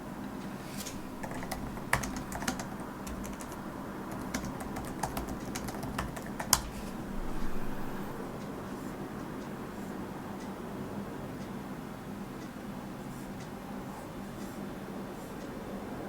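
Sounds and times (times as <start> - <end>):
faint steady hum: 0.0 - 16.0
keyboard keystroke clicks: 0.8 - 8.3.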